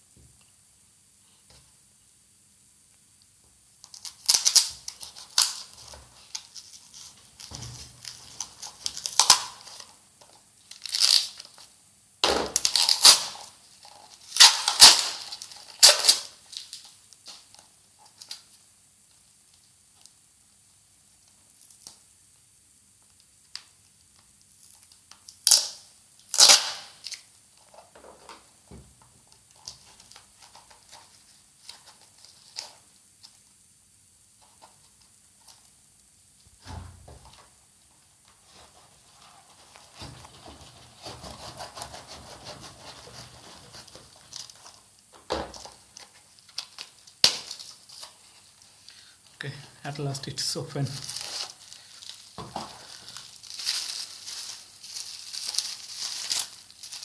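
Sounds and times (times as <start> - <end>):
package tearing and crinkling: 3.9 - 9.9, 10.6 - 11.6, 12.5 - 16.9, 25.4 - 27.3, 45.5 - 48.7, 50.9 - 57.0
soft rustling: 37.4 - 48.8, 50.8 - 57.0.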